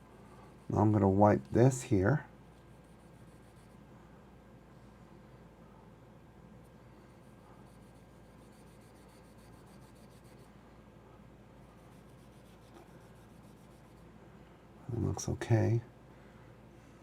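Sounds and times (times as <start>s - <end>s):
low steady hum: 0.0s - 17.0s
faint rubbing: 11.7s - 14.1s.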